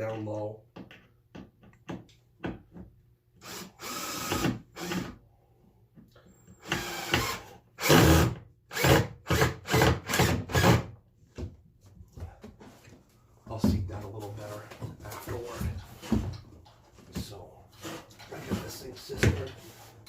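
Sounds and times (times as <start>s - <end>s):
power drill driving screws into wood: 3.4s - 5.2s, 6.6s - 10.9s.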